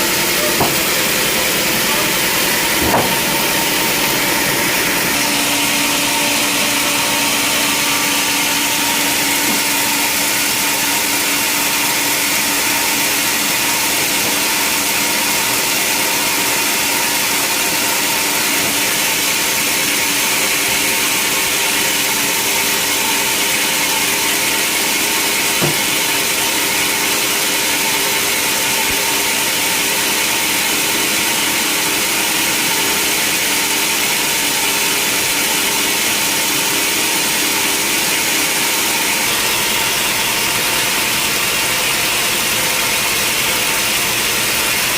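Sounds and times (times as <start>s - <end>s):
sawmill saw running: 0.0s - 44.9s
short knock: 0.4s - 1.0s, 2.8s - 3.4s, 25.6s - 26.0s.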